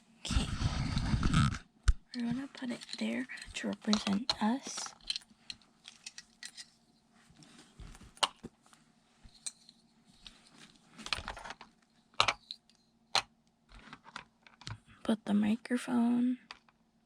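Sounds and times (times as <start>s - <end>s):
plastic toy pieces clicking: 2.2s - 5.3s.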